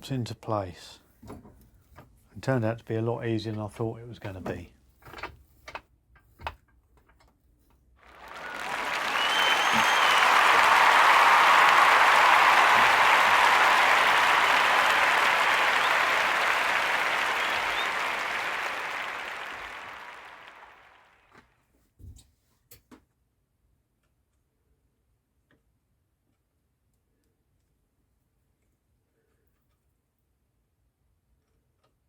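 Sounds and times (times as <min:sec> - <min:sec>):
crowd applause: 0:08.0 - 0:21.2.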